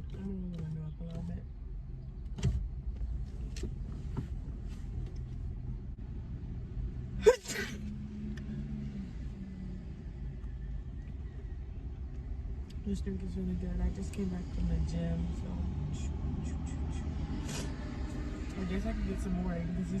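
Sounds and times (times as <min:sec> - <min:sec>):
car interior rumble: 0:00.0 - 0:20.0
woman sneezing: 0:07.2 - 0:07.8.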